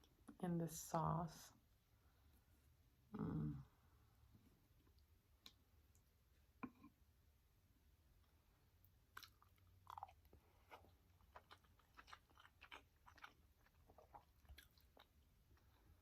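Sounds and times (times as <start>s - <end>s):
person chewing food: 8.2s - 16.0s.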